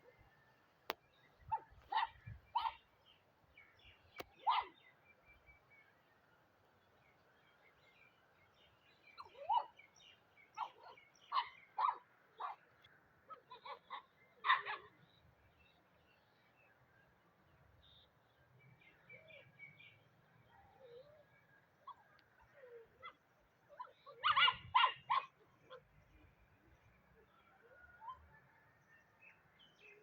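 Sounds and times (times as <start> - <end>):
animal yelps or squawks: 21.9 - 25.8.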